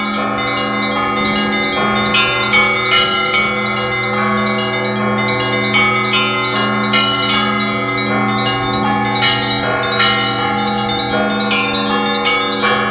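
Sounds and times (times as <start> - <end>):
lingering hum of large bells: 0.0 - 12.9
quick strikes on higher church bells: 0.0 - 12.9.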